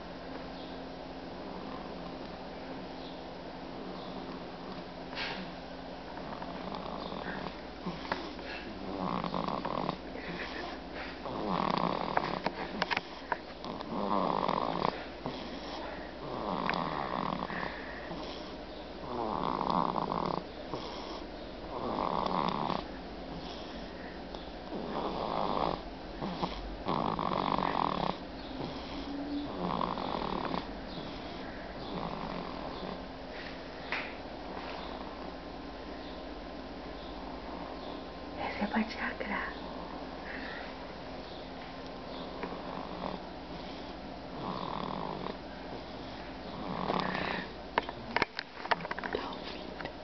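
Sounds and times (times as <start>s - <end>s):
rasping snoring: 6.2s - 24.0s, 24.7s - 33.1s, 42.3s - 47.6s.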